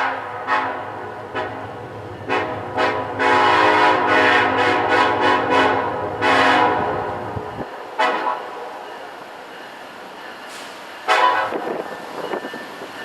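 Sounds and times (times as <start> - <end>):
locomotive air horn: 0.0 - 7.1, 8.0 - 8.5, 11.0 - 11.7
train rumbling past: 0.0 - 13.0.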